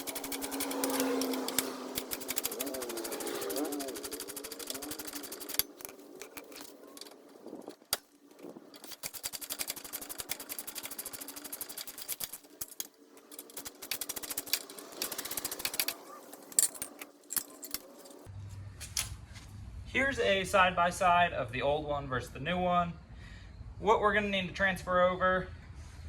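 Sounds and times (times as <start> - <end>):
socket ratchet clicking: 0.0 - 7.2, 8.8 - 18.2.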